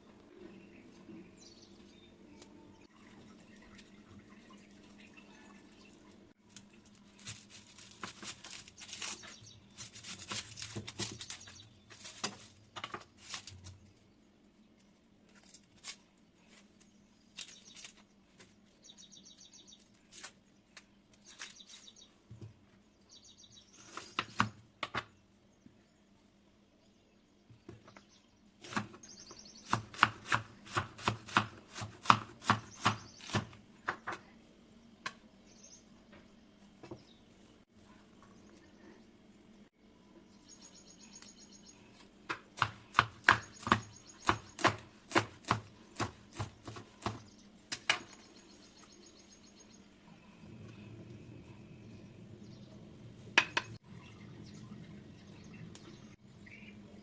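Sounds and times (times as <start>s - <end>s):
knife chopping on cutting board: 29.7s - 34.1s, 42.6s - 47.2s.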